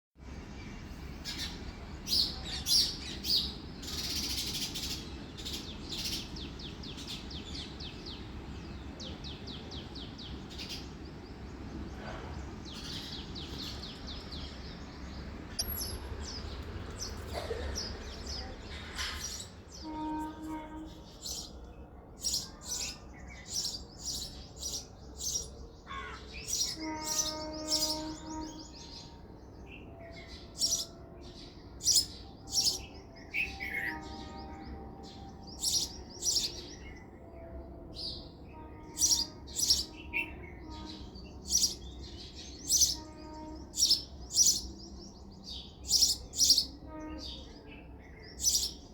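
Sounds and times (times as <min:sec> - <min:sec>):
sparrows chirping: 0:00.3 - 0:48.9.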